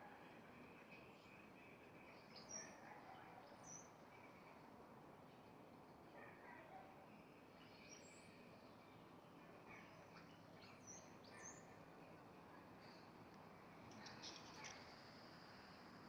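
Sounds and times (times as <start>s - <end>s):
faint bird chirps: 13.8s - 15.2s.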